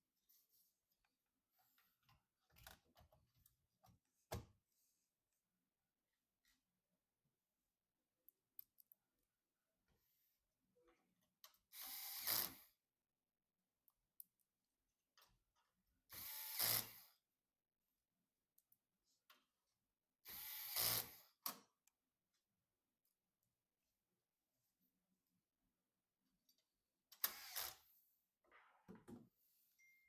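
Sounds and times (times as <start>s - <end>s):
electric screwdriver driving screws: 11.7s - 12.7s, 16.1s - 17.1s, 20.3s - 21.2s, 27.2s - 27.8s.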